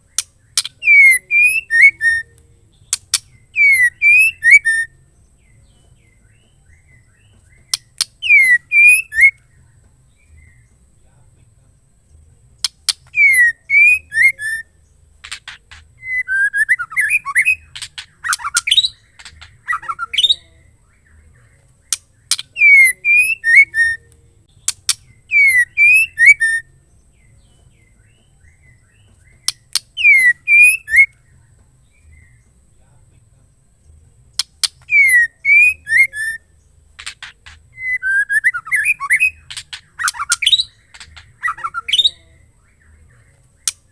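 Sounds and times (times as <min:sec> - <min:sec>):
bird ticking and whistling: 0:00.0 - 0:10.9, 0:12.6 - 0:32.7, 0:33.8 - 0:43.9
bird chattering: 0:00.0 - 0:32.8, 0:34.4 - 0:43.9.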